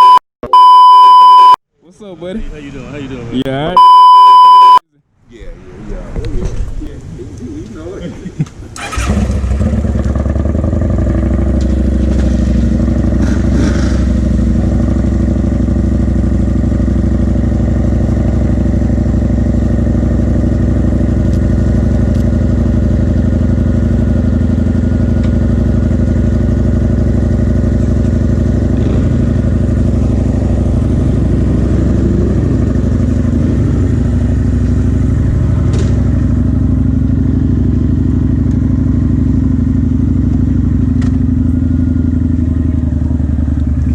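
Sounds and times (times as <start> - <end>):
motorcycle engine running: 8.8 - 43.9.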